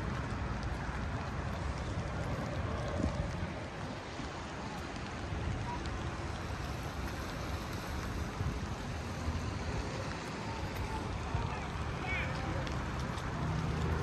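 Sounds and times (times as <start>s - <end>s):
floodwater rushing: 0.0s - 14.0s.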